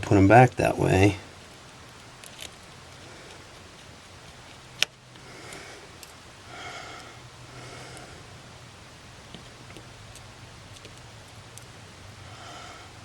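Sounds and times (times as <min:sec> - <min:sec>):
small screws and screwdriver handling: 0:02.0 - 0:05.0.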